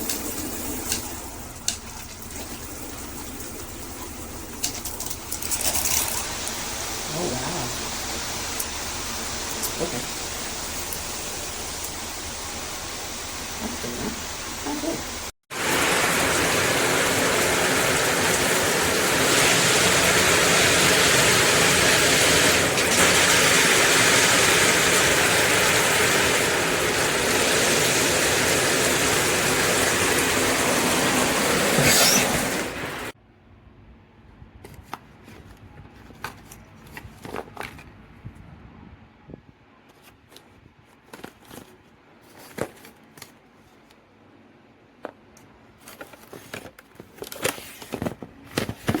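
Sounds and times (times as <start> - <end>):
shower spraying water: 0.0 - 33.2.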